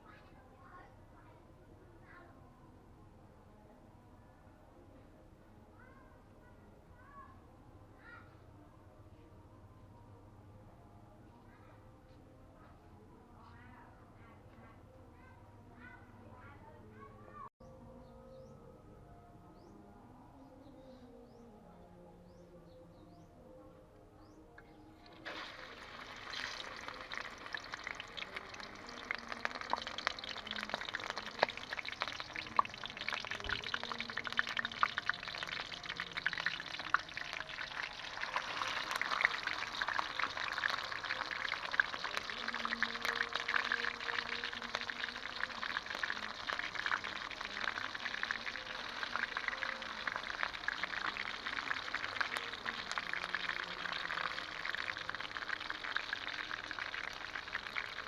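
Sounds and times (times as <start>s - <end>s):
pork sizzling in hot oil: 25.1s - 58.0s.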